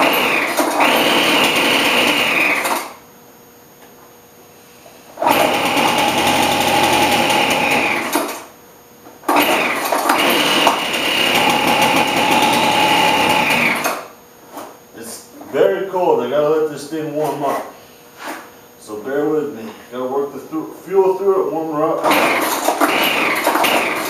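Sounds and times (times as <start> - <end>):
leaf blower engine sputtering: 0.0 - 2.9, 5.2 - 8.4, 9.3 - 14.0, 22.0 - 24.0.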